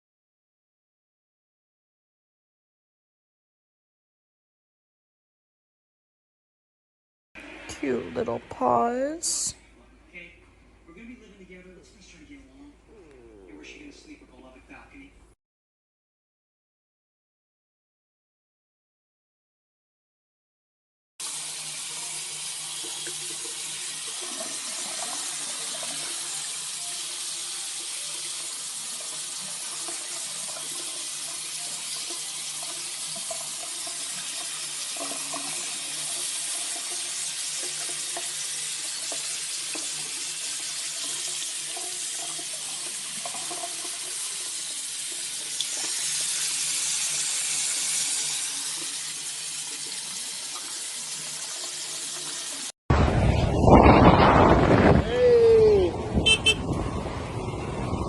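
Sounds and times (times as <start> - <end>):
running water hiss: 21.2 - 52.7.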